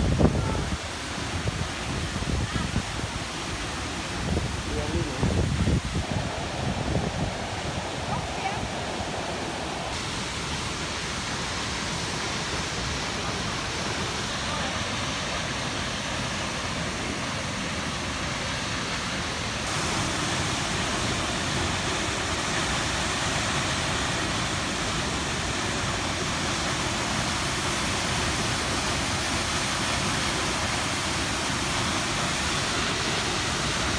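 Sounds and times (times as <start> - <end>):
waterfall roaring: 0.0 - 33.9.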